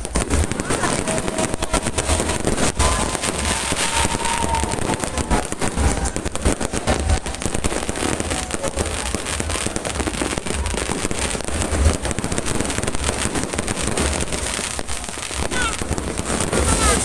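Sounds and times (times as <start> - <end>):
deep fireworks booms: 0.0 - 17.0
fireworks bangs and crackles: 0.0 - 17.0.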